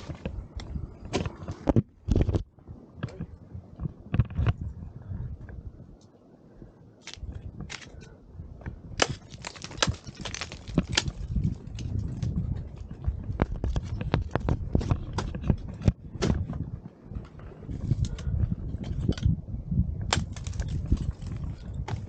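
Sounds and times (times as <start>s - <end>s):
crunching and crackling: 0.0s - 4.6s, 7.0s - 19.4s, 20.0s - 22.0s.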